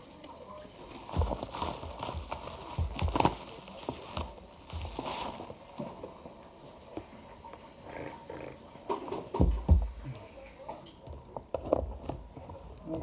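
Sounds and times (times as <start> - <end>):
packaging rustling: 0.8 - 6.0.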